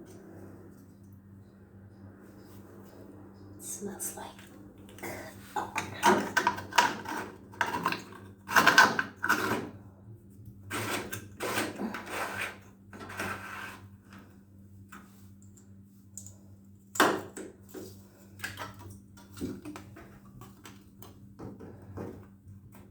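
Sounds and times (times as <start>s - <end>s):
steady low hum: 0.0s - 12.7s.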